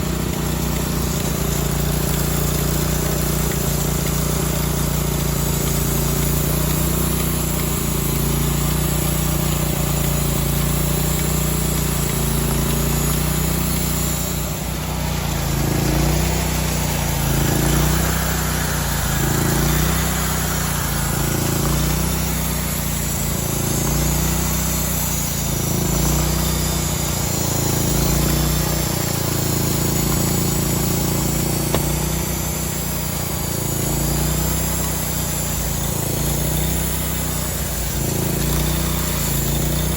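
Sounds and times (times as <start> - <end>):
sawmill engine running: 0.0 - 39.9.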